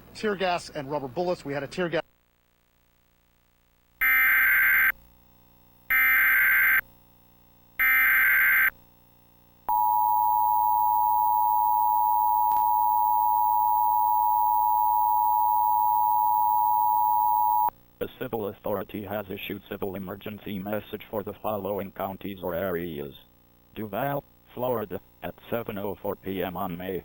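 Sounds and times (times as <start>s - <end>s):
two-tone attention signal: 9.7s - 17.7s.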